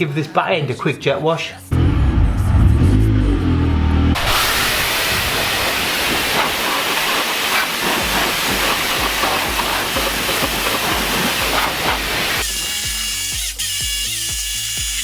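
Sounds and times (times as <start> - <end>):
pressure washer spraying water: 4.2 - 13.7.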